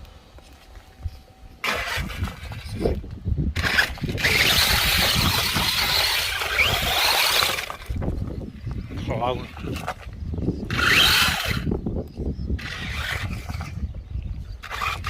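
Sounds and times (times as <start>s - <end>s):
electric motor whine: 0.0s - 8.6s, 10.6s - 15.0s
wind rumble: 0.0s - 15.0s
tyres churning over rough ground: 1.6s - 8.4s, 9.0s - 11.7s, 12.6s - 13.8s, 14.6s - 15.0s.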